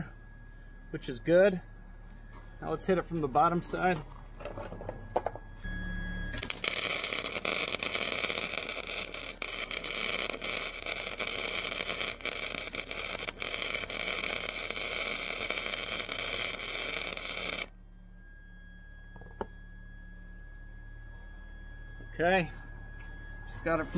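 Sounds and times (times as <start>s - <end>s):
welding arc crackling: 6.4s - 17.7s.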